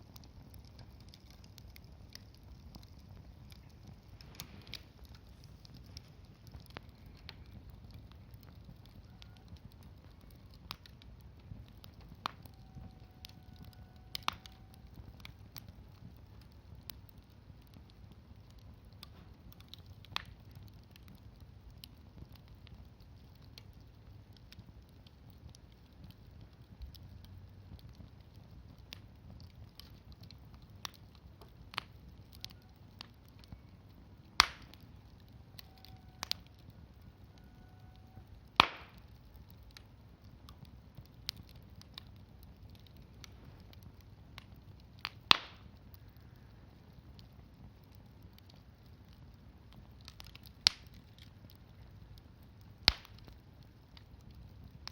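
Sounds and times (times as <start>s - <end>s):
campfire crackling and popping: 0.0s - 54.9s
sharp wood crack: 34.4s - 34.7s, 38.6s - 39.0s, 45.3s - 45.6s, 52.9s - 53.1s.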